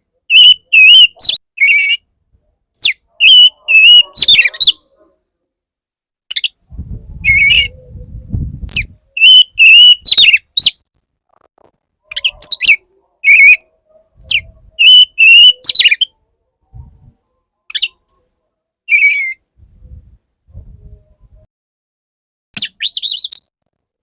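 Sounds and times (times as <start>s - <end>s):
bird singing whistled notes: 0.3s - 2.0s, 2.8s - 4.8s, 8.6s - 10.4s, 14.2s - 16.1s.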